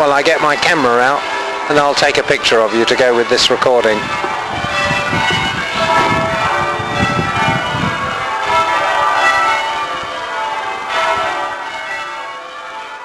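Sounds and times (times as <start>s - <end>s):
church bells ringing: 0.0s - 13.0s
low rumbling noise: 4.0s - 8.9s.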